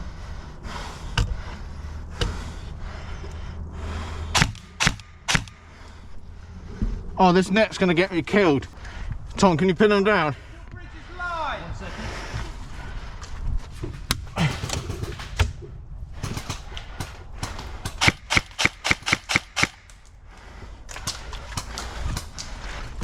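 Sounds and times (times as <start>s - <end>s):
airsoft gun shots: 4.3s - 5.7s, 16.2s - 19.9s.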